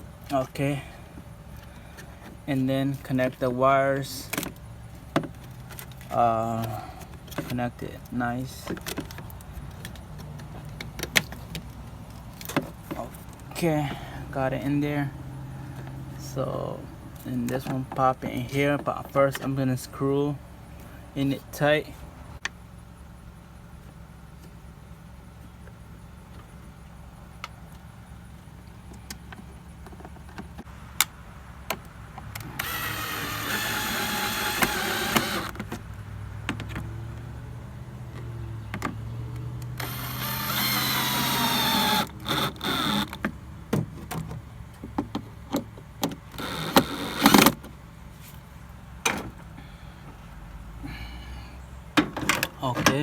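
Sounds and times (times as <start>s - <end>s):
steady low hum: 0.0s - 36.4s
power drill whining: 32.4s - 35.6s, 39.6s - 43.2s, 46.4s - 47.5s.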